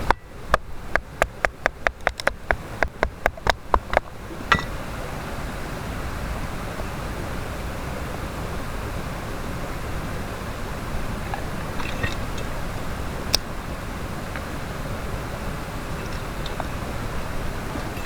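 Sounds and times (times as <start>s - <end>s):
sharp clicks: 0.0s - 4.1s
mountain stream rushing: 0.0s - 18.0s.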